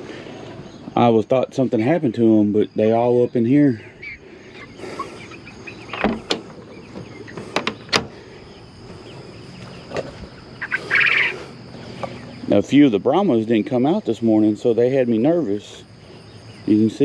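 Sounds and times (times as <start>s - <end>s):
chickens clucking: 0.0s - 16.9s
sharp clicks and knocks: 5.9s - 8.1s.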